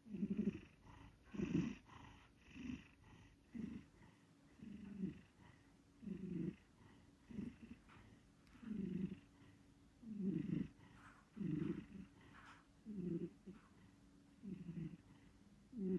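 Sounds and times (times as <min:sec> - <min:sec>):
cat snoring: 0:00.0 - 0:15.9.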